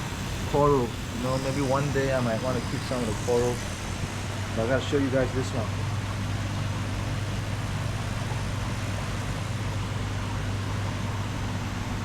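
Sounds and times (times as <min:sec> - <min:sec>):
steady hiss: 0:00.0 - 0:06.2
machinery hum: 0:00.0 - 0:12.0.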